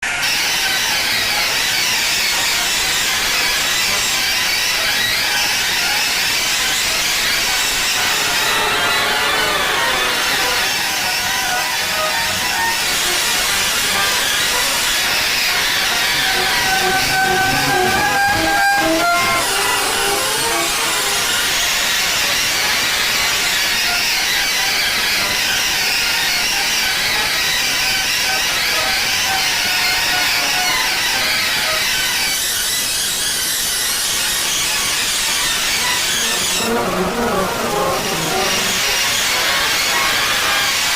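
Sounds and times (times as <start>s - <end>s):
faint broken tones: 11.4s - 21.5s.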